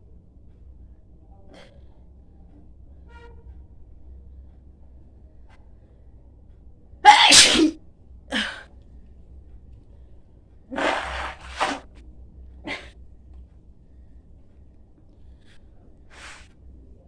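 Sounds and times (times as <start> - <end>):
woman sneezing: 7.1 - 7.8.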